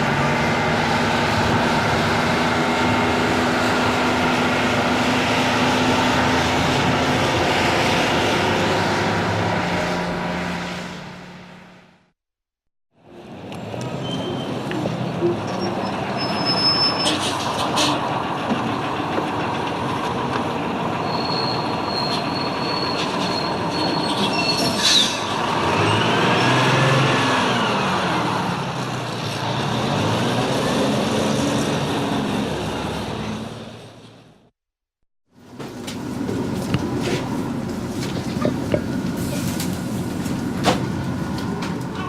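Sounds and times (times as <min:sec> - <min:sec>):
bus engine changing gear: 0:35.4 - 0:42.0.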